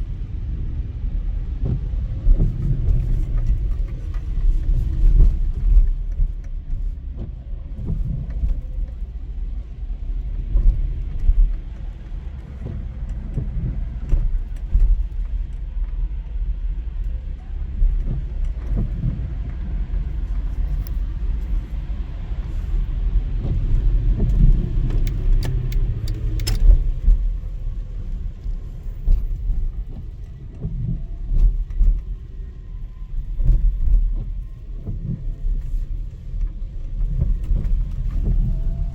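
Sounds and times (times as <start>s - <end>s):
car interior rumble: 0.0s - 38.9s
scattered clicks: 24.2s - 27.2s.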